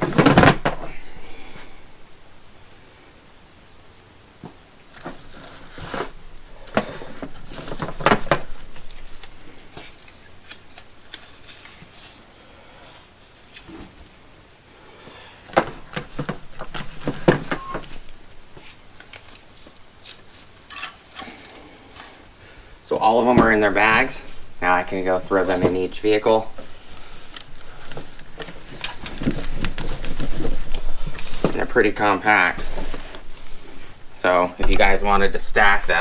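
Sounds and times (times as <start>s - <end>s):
ratchet straps rustling and clicking: 4.9s - 13.9s, 15.5s - 22.3s, 23.2s - 35.0s.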